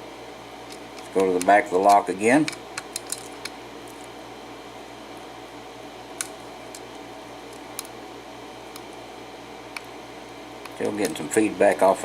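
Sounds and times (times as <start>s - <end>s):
lock pick clicking: 0.7s - 3.6s.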